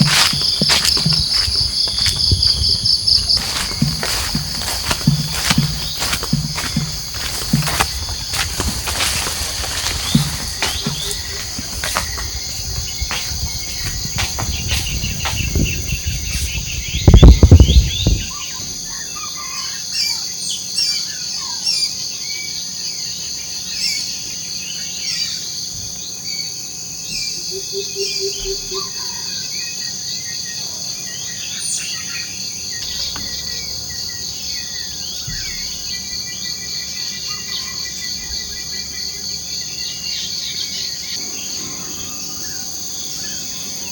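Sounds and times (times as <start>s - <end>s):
birds chirping and calling: 0.0s - 18.7s
insects droning: 0.0s - 20.6s, 22.1s - 43.9s.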